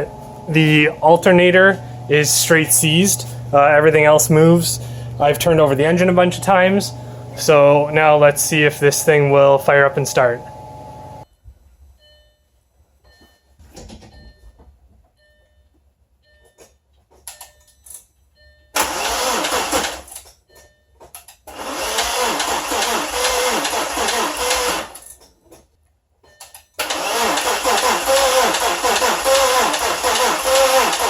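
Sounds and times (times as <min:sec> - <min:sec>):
car engine cranking without starting: 0:18.8 - 0:20.2, 0:21.5 - 0:25.2, 0:26.8 - 0:31.0.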